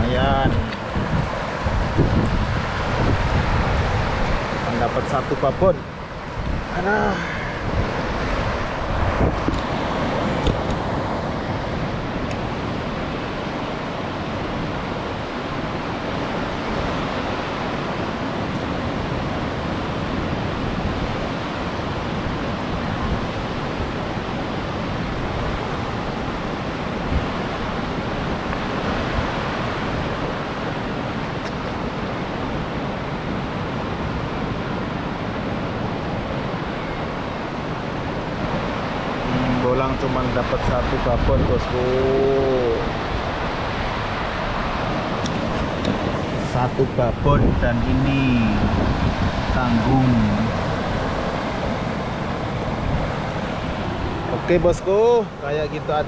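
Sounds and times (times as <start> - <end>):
wind buffeting microphone: 0.0 - 55.8.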